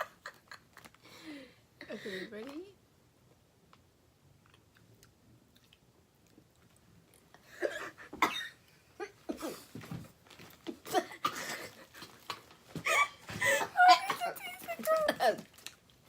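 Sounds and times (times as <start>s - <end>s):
people coughing: 10.9s - 11.8s.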